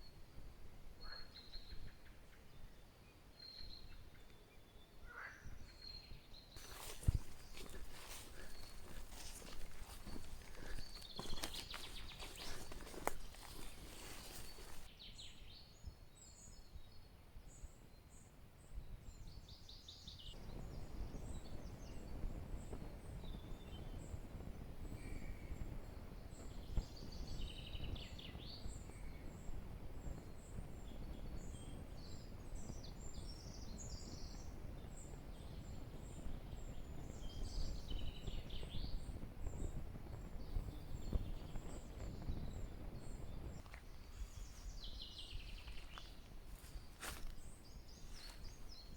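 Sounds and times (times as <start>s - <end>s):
small birds chirping: 1.0s - 48.9s
rough steady rustling: 6.6s - 14.9s, 41.3s - 48.9s.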